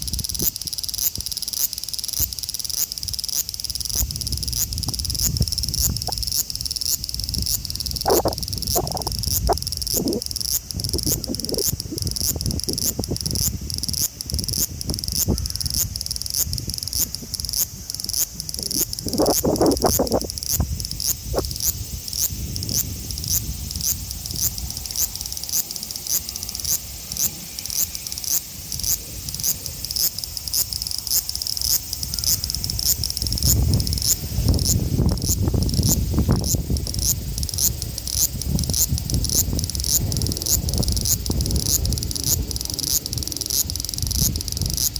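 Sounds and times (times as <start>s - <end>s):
cicada singing: 0.0s - 44.9s.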